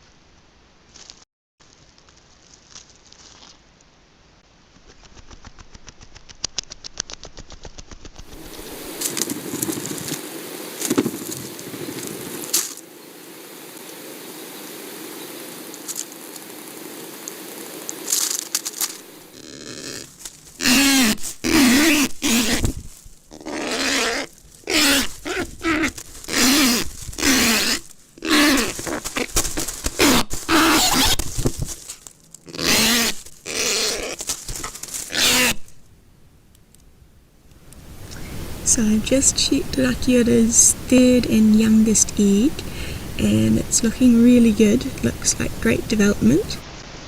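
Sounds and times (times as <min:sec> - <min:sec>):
rustles and crackles: 0:00.3 - 0:47.0
steady hiss: 0:08.3 - 0:23.3, 0:34.1 - 0:47.0
bird giving harsh nasal calls: 0:19.3 - 0:22.7, 0:23.3 - 0:29.3, 0:32.5 - 0:34.2, 0:35.1 - 0:35.7.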